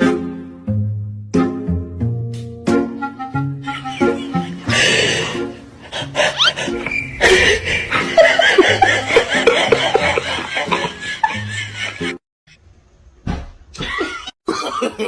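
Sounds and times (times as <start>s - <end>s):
person laughing hard: 3.7s - 12.2s, 13.8s - 15.0s.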